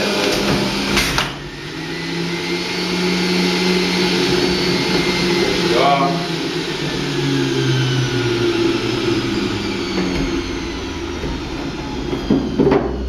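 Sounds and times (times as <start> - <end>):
electric juicer motor whining: 0.0 - 13.0.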